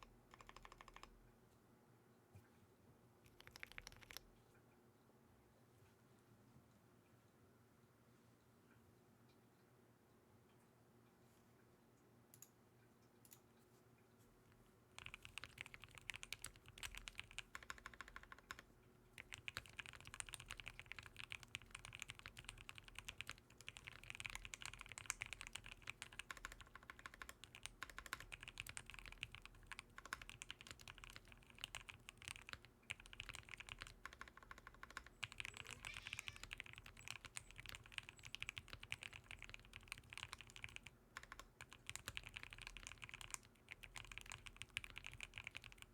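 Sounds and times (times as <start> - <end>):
fast typing on mechanical keyboard: 0.0 - 1.1, 3.3 - 4.2, 15.0 - 45.9.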